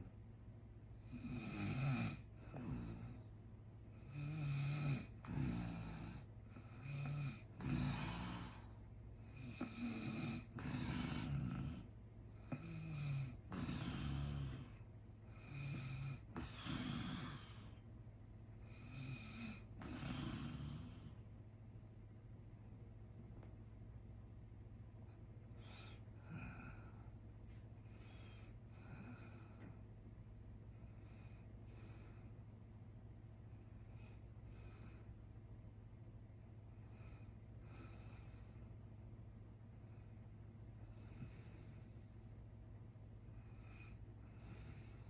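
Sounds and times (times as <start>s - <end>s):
faint low hum: 0.0s - 45.0s
man snoring: 1.0s - 3.2s, 3.9s - 17.8s, 18.6s - 21.2s, 25.6s - 27.1s.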